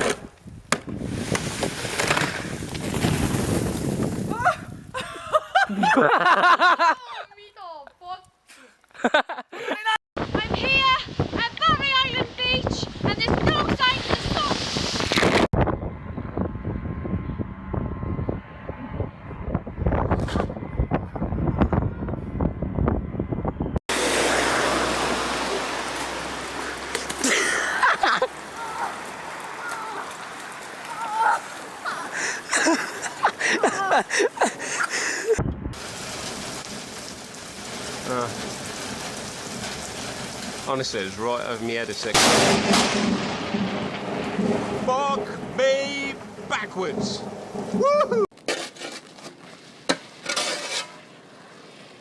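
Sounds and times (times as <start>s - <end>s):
person crying out: 4.3s - 4.7s, 28.6s - 29.0s, 30.9s - 34.2s, 47.8s - 48.3s
rough rushing noise: 22.3s - 30.8s, 35.4s - 48.0s
high-pitched shrieking laughter: 31.0s - 35.4s.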